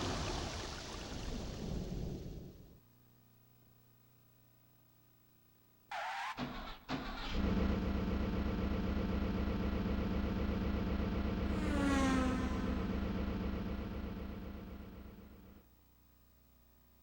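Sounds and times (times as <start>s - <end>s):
synthesized car engine: 5.9s - 15.6s.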